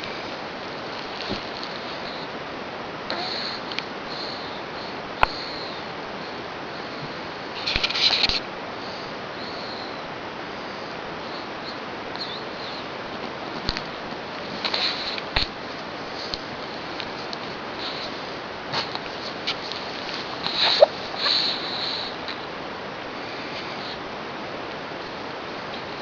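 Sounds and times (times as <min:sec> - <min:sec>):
steady hiss: 0:00.0 - 0:26.0
pet snoring: 0:03.1 - 0:07.1, 0:20.4 - 0:22.4
high whistling nose snuffles: 0:20.4 - 0:22.2.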